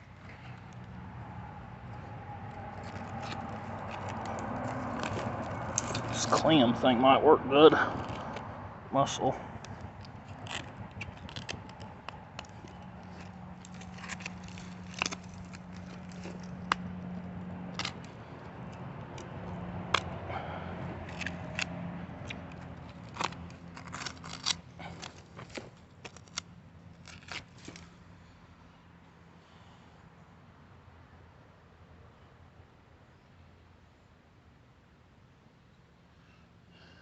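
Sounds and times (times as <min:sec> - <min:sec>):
shell scraping dirt: 0:01.9 - 0:07.0, 0:07.6 - 0:28.0.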